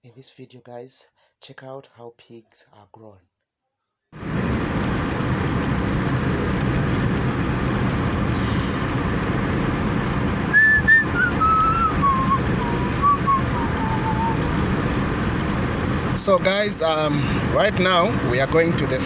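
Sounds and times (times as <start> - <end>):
car road and engine noise: 4.2 - 19.0
person whistling a tune: 10.5 - 14.4.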